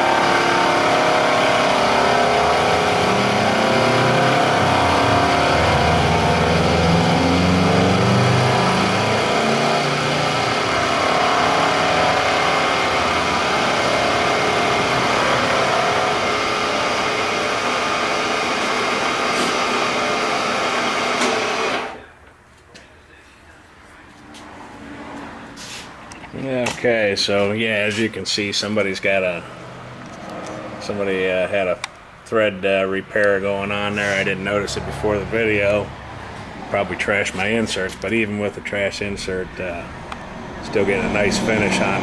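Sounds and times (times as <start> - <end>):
milling machine cutting: 0.0 - 22.1, 38.8 - 42.0.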